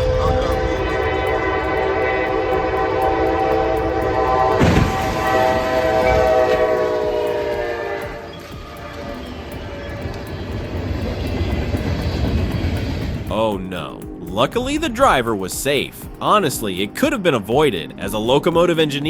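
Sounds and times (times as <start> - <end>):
locomotive air horn: 0.0 - 10.3
train striking a vehicle: 0.0 - 13.4.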